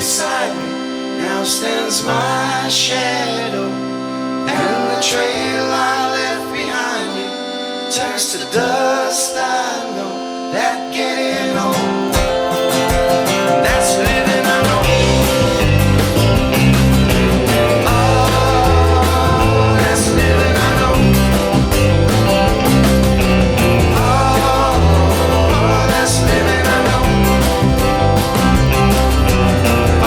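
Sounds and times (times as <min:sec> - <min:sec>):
person singing: 0:00.0 - 0:22.1, 0:23.5 - 0:28.9
guitar and keyboard chords: 0:00.0 - 0:30.0
steady drum beat: 0:12.2 - 0:30.0
heavy bass: 0:12.8 - 0:30.0.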